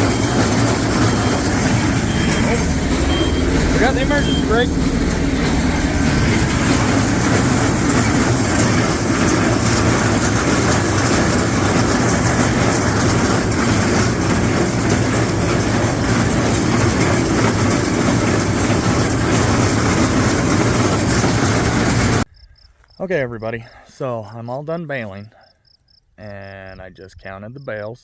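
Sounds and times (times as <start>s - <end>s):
baler baling hay: 0.0s - 22.2s
tractor engine running: 0.0s - 22.3s.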